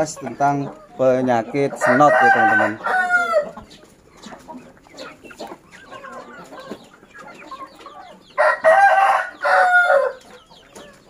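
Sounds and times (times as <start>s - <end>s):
chickens clucking: 0.0s - 11.0s
rooster crowing: 1.8s - 3.6s, 8.4s - 10.2s.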